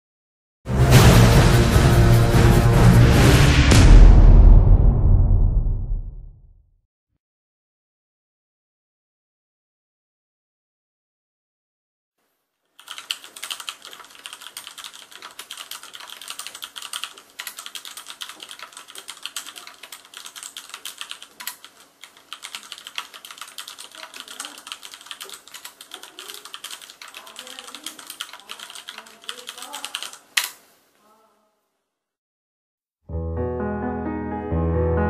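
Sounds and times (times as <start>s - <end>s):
typing on mechanical keyboard: 12.8s - 30.6s.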